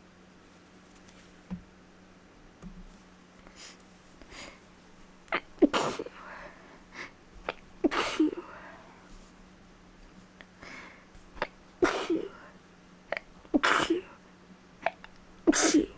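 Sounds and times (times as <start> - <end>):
woman sneezing: 5.4 - 6.2, 7.5 - 8.5, 11.4 - 12.4, 13.1 - 14.2, 14.9 - 15.9.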